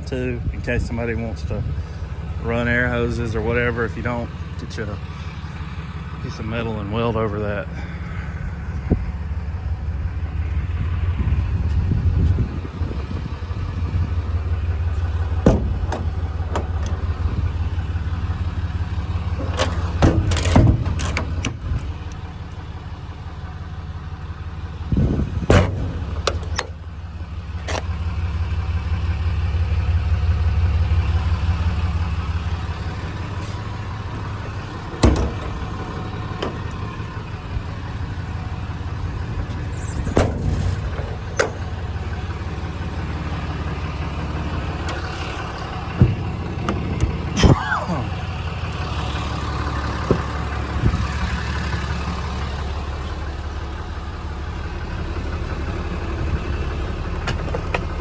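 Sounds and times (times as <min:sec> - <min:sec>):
diesel engine idling: 0:00.0 - 0:58.0
sharp knocks and bangs: 0:15.4 - 0:17.3, 0:19.4 - 0:21.9, 0:25.0 - 0:26.8, 0:34.5 - 0:36.9, 0:39.6 - 0:42.0, 0:44.7 - 0:47.8, 0:49.8 - 0:51.2.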